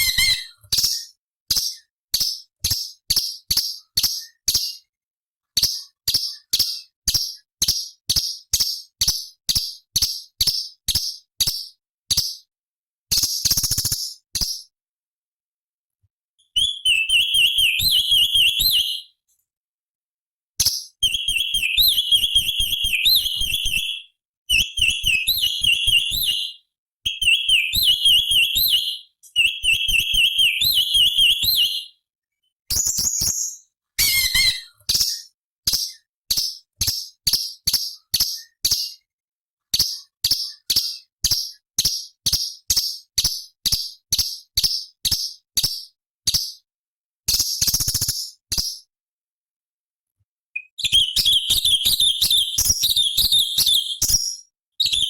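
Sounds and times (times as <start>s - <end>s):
bird singing warbling whistles: 0.0s - 4.9s, 16.4s - 19.2s, 20.7s - 32.0s, 32.7s - 36.1s, 50.6s - 55.0s
bird sharp high notes: 32.8s - 34.7s.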